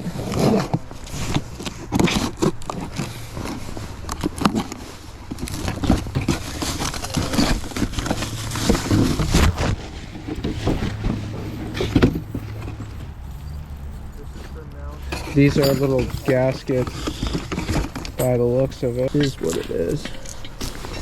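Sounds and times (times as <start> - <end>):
packaging rustling: 0.0 - 13.3, 15.0 - 21.0
small parts clicking and knocking: 15.0 - 21.0.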